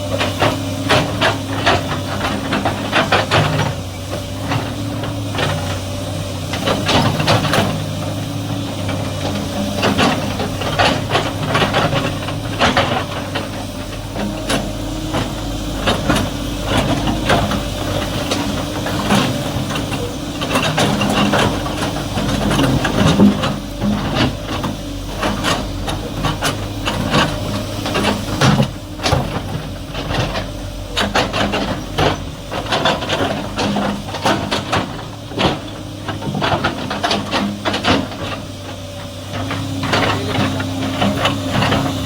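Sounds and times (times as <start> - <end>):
excavator diesel engine running: 0.0 - 42.0
metal clanks and knocks: 8.8 - 38.4.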